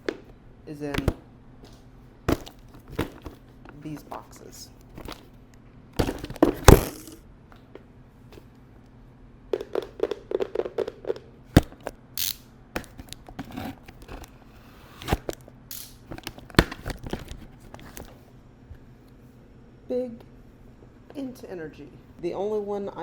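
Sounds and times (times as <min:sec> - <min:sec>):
cardboard packaging being opened: 0:06.0 - 0:07.2.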